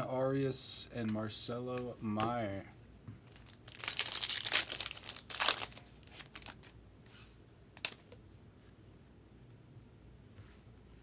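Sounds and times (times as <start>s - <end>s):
cards rustling: 3.3s - 6.8s
foil wrapper crinkling and tearing: 3.3s - 6.8s.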